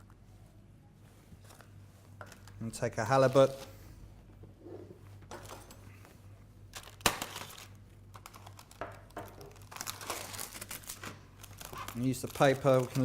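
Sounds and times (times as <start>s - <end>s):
low steady hum: 0.0s - 13.0s
paper crinkling: 6.7s - 13.0s.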